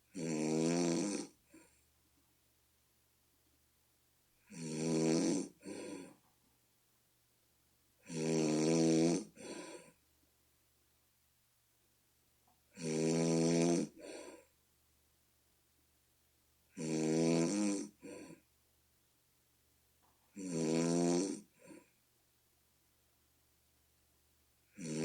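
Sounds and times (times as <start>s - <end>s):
person snoring: 0.1s - 1.7s, 4.4s - 6.2s, 8.0s - 10.0s, 12.7s - 14.5s, 16.7s - 18.4s, 20.3s - 21.9s, 24.7s - 25.0s.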